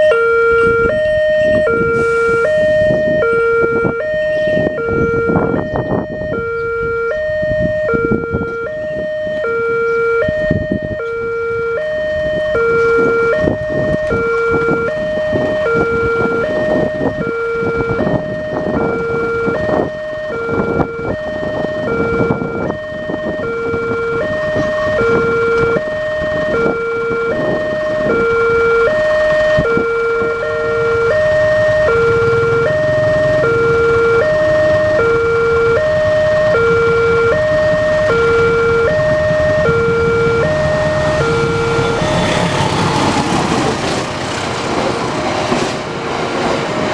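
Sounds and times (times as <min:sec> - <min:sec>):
crossing two-tone warning siren: 0:00.0 - 0:46.9
clacking and rumbling: 0:37.2 - 0:46.9.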